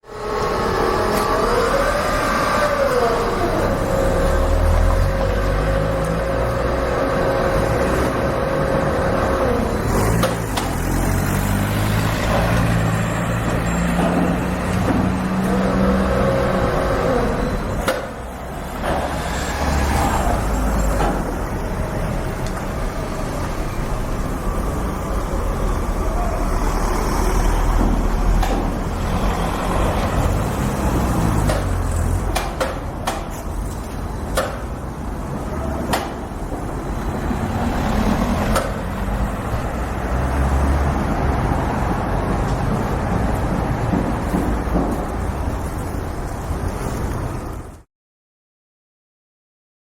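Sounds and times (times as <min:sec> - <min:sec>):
heavy vehicle engines running: 0:00.0 - 0:47.9
traffic noise: 0:00.0 - 0:47.9
knocks and clanks: 0:12.2 - 0:15.6, 0:20.7 - 0:21.5, 0:27.6 - 0:29.0, 0:42.4 - 0:45.4.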